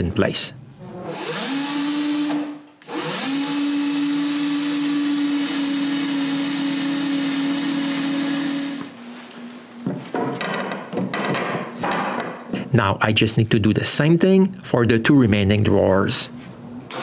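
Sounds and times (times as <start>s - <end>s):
power drill driving screws: 1.1s - 9.0s.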